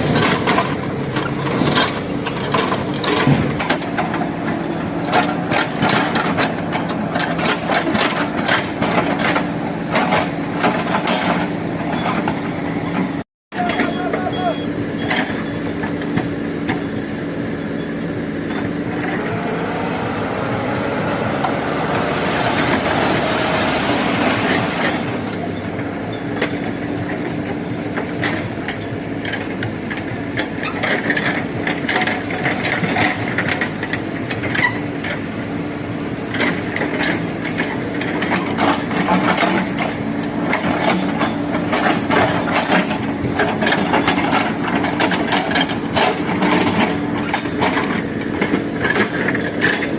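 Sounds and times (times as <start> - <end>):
diesel engine running: 0.0 - 49.9
metallic clicking and clanking: 36.3 - 49.9.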